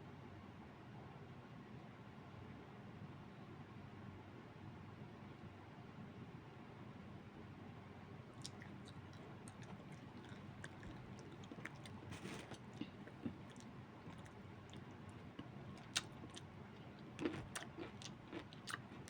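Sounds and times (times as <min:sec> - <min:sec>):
faint chewing: 0:08.4 - 0:19.0.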